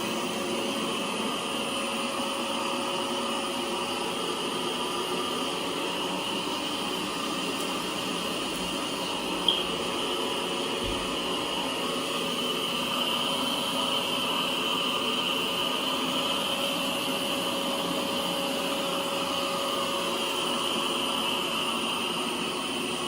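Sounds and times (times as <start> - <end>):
high click: 9.4 - 9.6.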